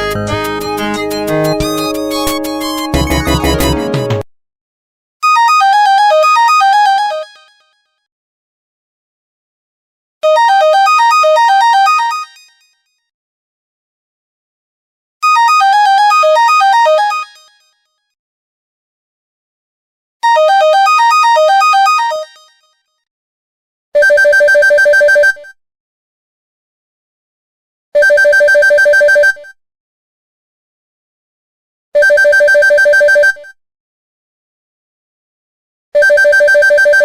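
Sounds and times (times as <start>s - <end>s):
phone ringtone electronic melody: 0.0s - 4.3s, 32.0s - 33.4s, 36.0s - 37.0s
electronic phone ring pulsing: 1.6s - 4.1s.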